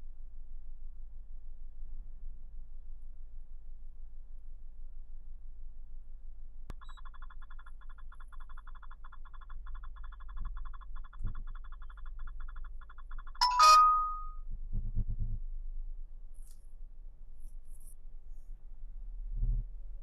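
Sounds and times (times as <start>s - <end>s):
low steady hum: 12.9s - 20.0s
short ding: 13.4s - 14.4s.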